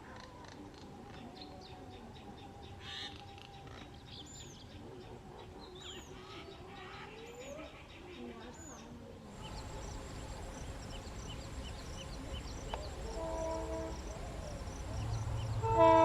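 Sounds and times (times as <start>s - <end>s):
birds chirping: 0.6s - 16.0s
faint wavering low drone: 9.3s - 16.0s.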